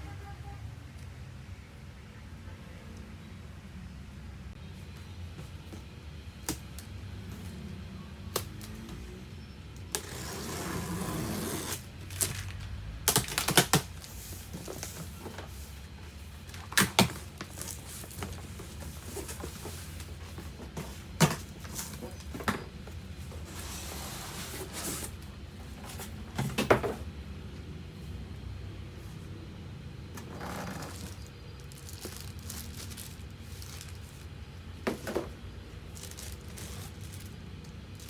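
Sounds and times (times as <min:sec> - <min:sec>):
plastic parts clicking and knocking: 0:12.2 - 0:14.1
rustling: 0:30.2 - 0:38.0.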